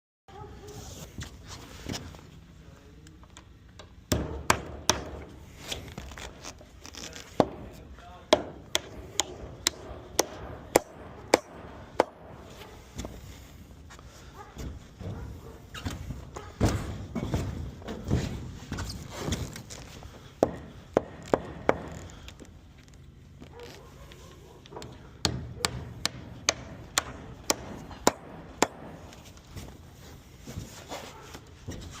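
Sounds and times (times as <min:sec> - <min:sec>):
hammer striking wood: 0:04.1 - 0:05.4, 0:07.4 - 0:13.2, 0:16.6 - 0:18.4, 0:20.4 - 0:22.0, 0:24.7 - 0:29.3.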